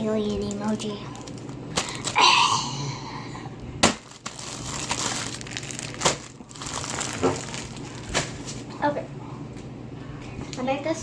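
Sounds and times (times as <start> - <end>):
slime squishing: 3.8 - 8.5.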